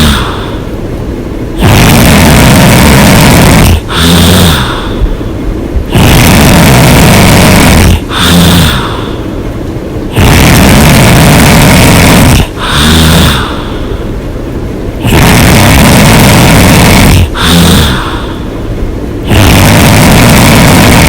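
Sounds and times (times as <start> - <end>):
woman snoring loudly: 0.0 - 0.7, 1.6 - 5.2, 5.9 - 9.2, 10.1 - 13.9, 15.0 - 18.5, 19.2 - 21.0
loud breaths: 0.0 - 0.8, 1.6 - 14.2, 15.0 - 21.0.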